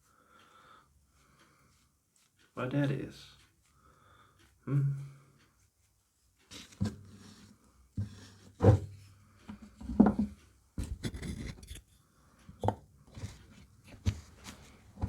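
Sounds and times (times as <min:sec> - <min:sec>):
objects scraping on workbench: 0:06.5 - 0:08.9, 0:09.5 - 0:11.8.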